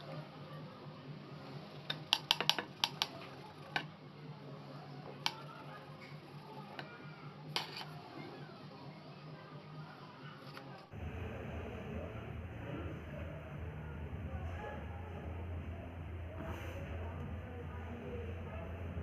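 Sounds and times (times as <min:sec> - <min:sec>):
low steady hum: 0:00.0 - 0:19.0
sharp clicks and taps: 0:01.9 - 0:03.9.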